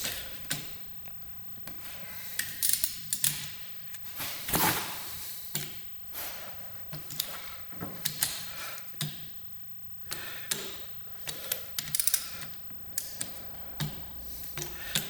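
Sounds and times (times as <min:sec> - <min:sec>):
wrench clicking on bolts: 0:02.4 - 0:03.6, 0:10.5 - 0:15.0.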